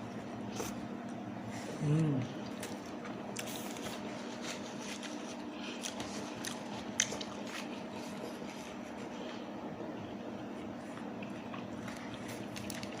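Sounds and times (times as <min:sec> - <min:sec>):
faint steady hum: 0:00.0 - 0:13.0
chewing with wet smacking: 0:02.3 - 0:09.4, 0:10.8 - 0:13.0.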